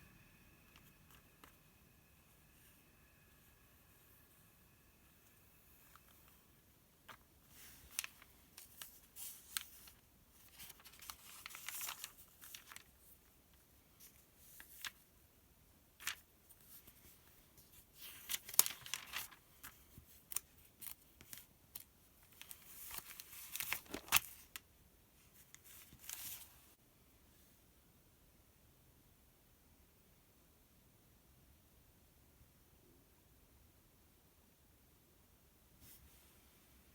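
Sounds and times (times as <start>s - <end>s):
glossy paper pages rustling: 5.2s - 15.1s, 16.0s - 26.8s.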